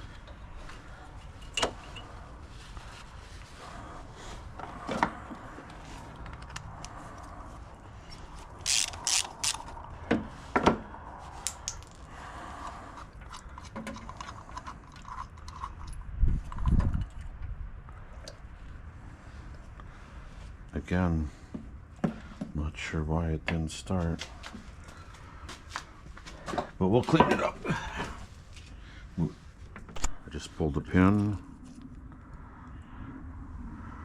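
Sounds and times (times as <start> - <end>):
metal parts clinking: 8.6 - 9.7.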